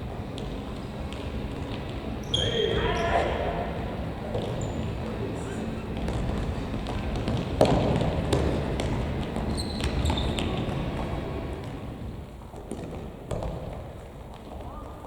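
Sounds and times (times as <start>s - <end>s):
steady hall noise: 0.0s - 15.0s
shoes squeaking on floor: 2.1s - 3.4s, 4.4s - 11.3s.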